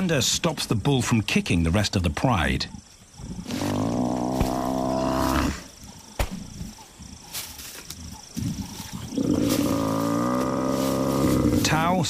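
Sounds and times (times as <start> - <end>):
scuffling: 3.4 - 12.0
buffalo bellowing: 9.0 - 11.8.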